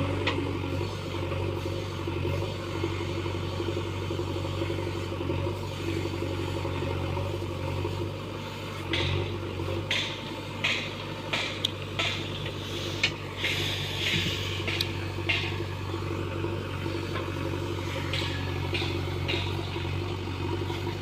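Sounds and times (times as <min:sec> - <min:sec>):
diesel engine running: 0:00.0 - 0:21.0.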